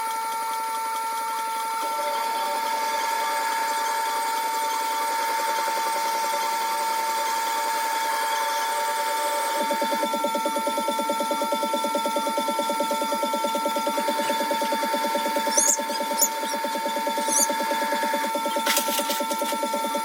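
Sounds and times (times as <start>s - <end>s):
sharpening grinder whining: 12.4s - 20.0s.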